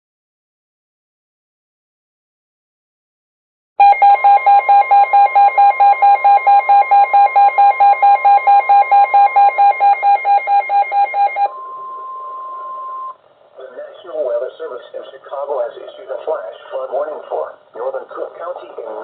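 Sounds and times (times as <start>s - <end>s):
steady warning tone: 3.8s - 13.2s.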